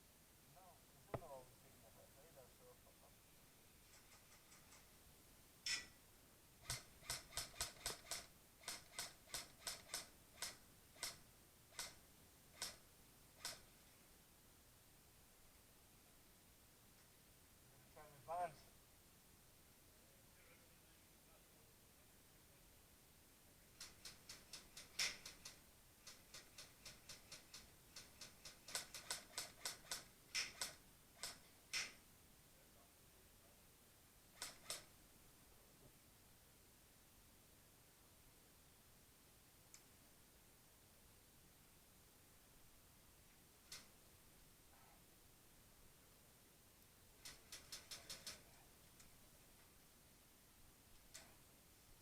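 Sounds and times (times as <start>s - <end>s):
rapid sharp clicks: 6.6s - 13.9s, 23.7s - 32.0s, 34.3s - 35.0s, 43.6s - 44.0s, 47.2s - 49.1s.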